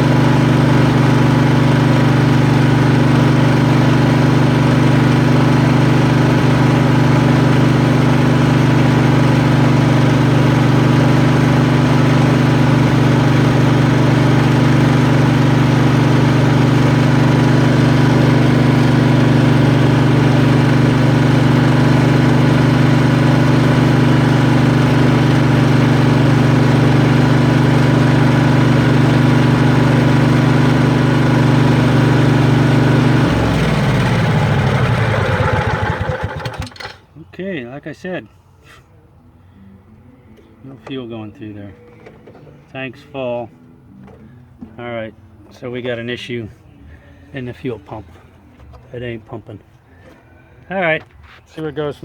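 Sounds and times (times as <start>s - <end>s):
riding mower engine running: 0.0s - 37.2s.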